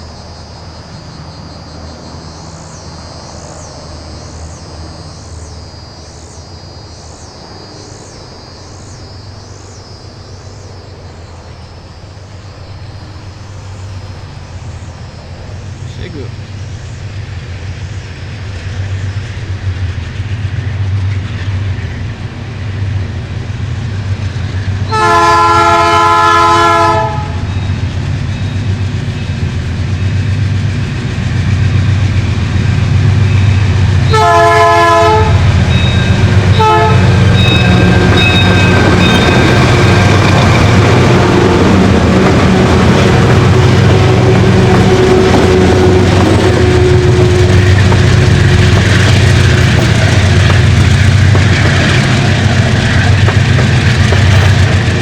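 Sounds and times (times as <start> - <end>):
diesel locomotive engine drone: 0.0 - 55.0
train air horn blasts: 24.9 - 27.5, 34.0 - 35.6, 36.4 - 39.7, 40.5 - 50.3.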